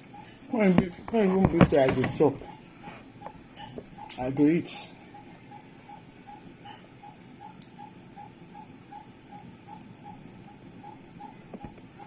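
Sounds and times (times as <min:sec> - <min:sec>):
faint ticking pips: 0:00.0 - 0:12.0.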